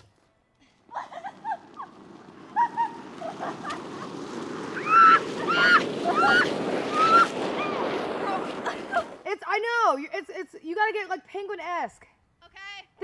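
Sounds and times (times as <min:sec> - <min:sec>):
person sliding across ice: 0:00.0 - 0:09.3.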